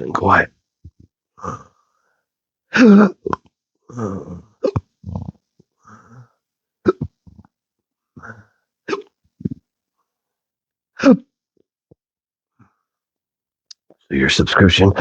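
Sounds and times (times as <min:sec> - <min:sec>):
breaths: 0:01.4 - 0:02.4, 0:05.7 - 0:06.5, 0:08.0 - 0:08.8, 0:12.5 - 0:13.0
man hiccuping: 0:04.0 - 0:05.3, 0:06.8 - 0:07.2, 0:08.9 - 0:09.2.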